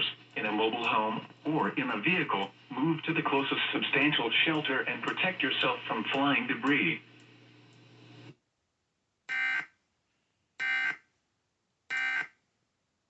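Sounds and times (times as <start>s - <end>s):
faint broadcast hum: 0.0s - 8.4s.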